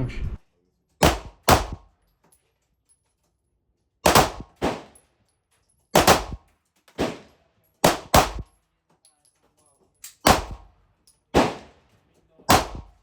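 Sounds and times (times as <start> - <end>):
pistol shots: 1.0 - 1.9, 4.0 - 5.0, 5.9 - 8.5, 10.2 - 10.7, 11.3 - 11.8, 12.5 - 13.0.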